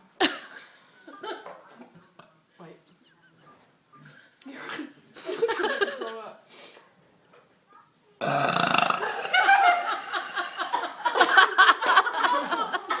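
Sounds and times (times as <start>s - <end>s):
loud drawn-out burping: 8.2s - 11.0s.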